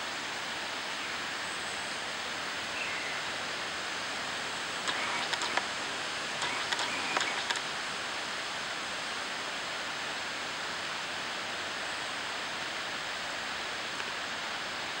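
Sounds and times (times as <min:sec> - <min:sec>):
steady rushing noise: 0:04.7 - 0:08.2
faint short clicks: 0:04.8 - 0:05.7, 0:06.4 - 0:07.7.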